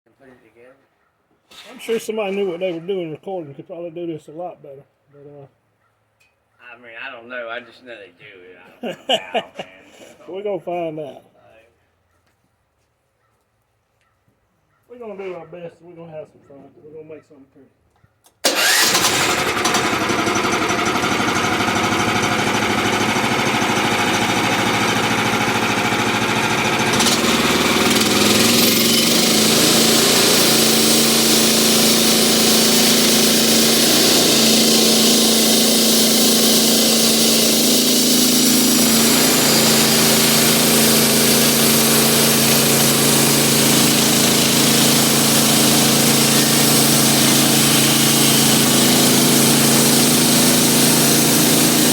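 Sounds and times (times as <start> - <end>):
bandsaw sawmill engine running: 18.4 - 51.9.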